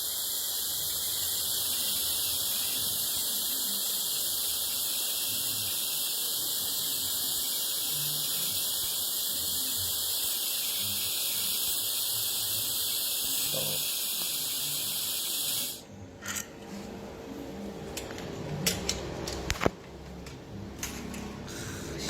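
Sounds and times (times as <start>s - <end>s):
welding arc hissing: 0.0s - 15.8s.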